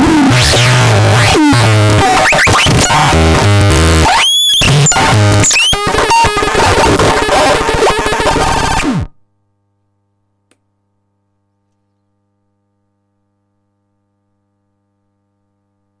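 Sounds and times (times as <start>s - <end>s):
synthesized electronic tones: 0.0s - 9.1s.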